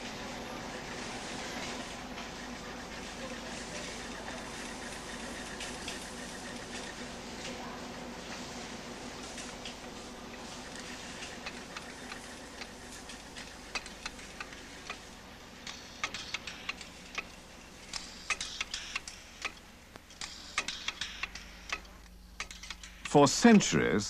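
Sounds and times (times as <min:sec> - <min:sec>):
faint steady hum: 0:00.0 - 0:24.0
light mechanical clicks and ticks: 0:09.2 - 0:23.7.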